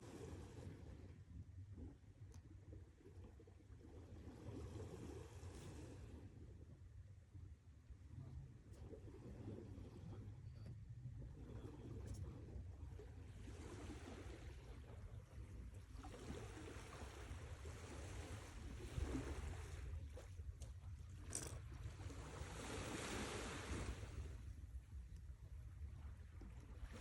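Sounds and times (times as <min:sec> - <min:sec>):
sea waves washing onto shore: 0:22.1 - 0:24.4.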